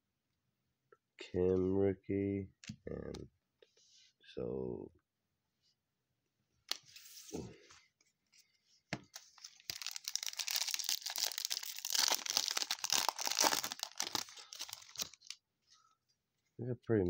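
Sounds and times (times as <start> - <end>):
wrapper rustles and clicks: 9.1 - 15.4
wrapper crinkling and tearing: 9.2 - 15.4.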